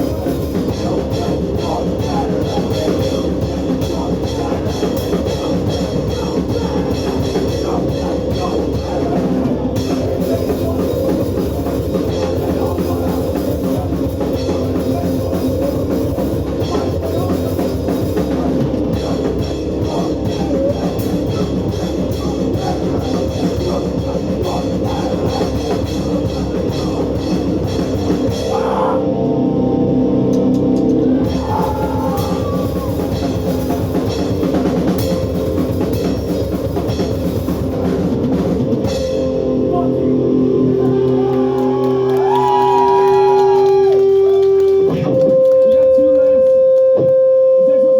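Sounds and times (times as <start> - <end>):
fast drums: 0.0 - 28.9, 30.9 - 40.1, 40.7 - 46.8
punk band playing live: 0.0 - 47.1
distorted guitar chord ringing: 28.3 - 30.8, 38.8 - 41.0.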